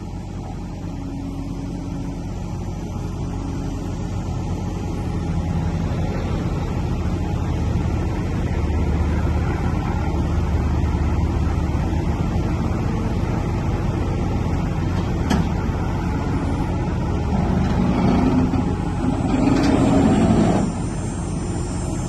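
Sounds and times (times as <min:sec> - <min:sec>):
machine engine low rumble: 0:00.0 - 0:22.0.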